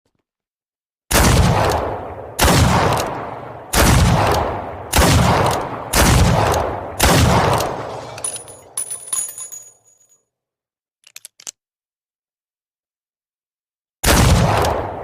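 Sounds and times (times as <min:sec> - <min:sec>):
revolver gunshots: 0:01.1 - 0:08.8, 0:14.0 - 0:15.0.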